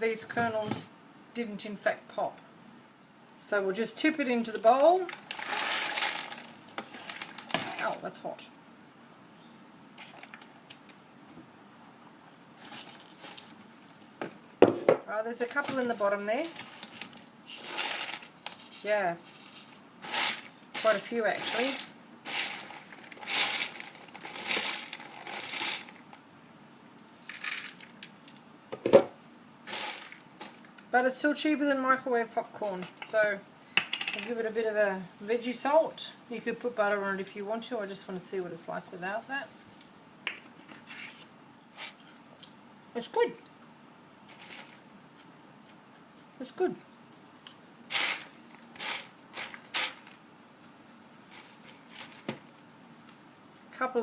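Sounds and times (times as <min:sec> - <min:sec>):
popcorn rustling in a bowl: 0:04.4 - 0:08.5, 0:09.8 - 0:11.0, 0:12.5 - 0:14.2, 0:15.2 - 0:26.2, 0:27.2 - 0:28.3, 0:29.6 - 0:31.0, 0:34.1 - 0:43.1, 0:44.2 - 0:45.8, 0:47.2 - 0:52.6
popcorn crunching: 0:05.1 - 0:07.9, 0:16.4 - 0:26.1.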